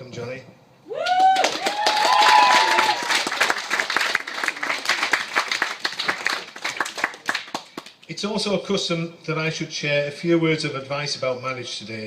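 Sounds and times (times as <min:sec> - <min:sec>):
people cheering: 0:00.9 - 0:07.4
crowd applauding: 0:01.0 - 0:08.0.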